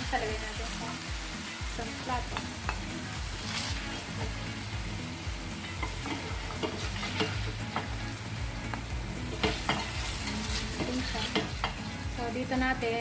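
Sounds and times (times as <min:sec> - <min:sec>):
pork sizzling in a wok: 0:00.0 - 0:13.0
metal spatula scraping a pan: 0:05.6 - 0:07.9, 0:09.2 - 0:11.8.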